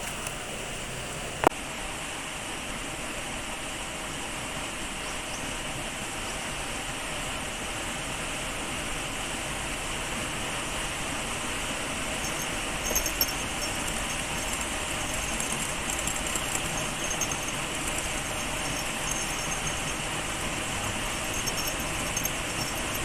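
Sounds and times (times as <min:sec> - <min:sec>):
river water rushing: 0:06.8 - 0:23.0
faint high chirping: 0:12.0 - 0:23.0.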